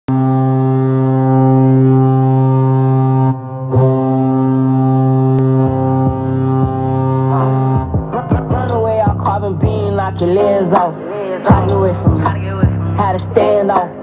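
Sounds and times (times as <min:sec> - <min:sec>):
low goal air horn blasts: 0:00.1 - 0:10.2
music beat: 0:00.1 - 0:14.0.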